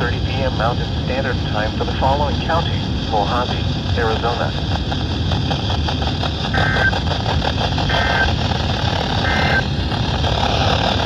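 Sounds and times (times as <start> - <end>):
background rumble: 0.0 - 11.0.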